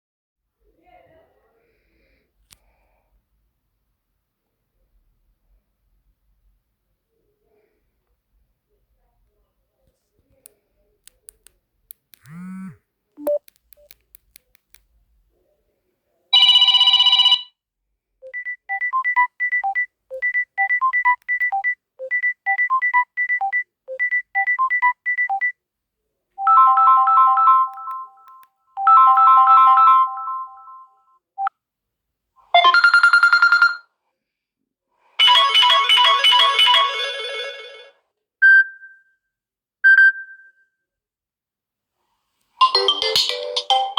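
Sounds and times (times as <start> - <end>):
faint clicks: 10.3 - 14.9
electronic ringtone tunes: 12.3 - 13.4, 18.2 - 25.5, 42.6 - 43.9.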